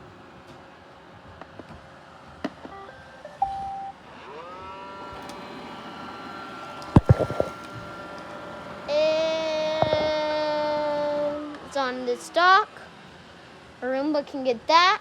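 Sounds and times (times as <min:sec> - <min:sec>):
robot vacuum motor whine: 0:00.0 - 0:13.6
robot vacuum beep: 0:02.7 - 0:04.0.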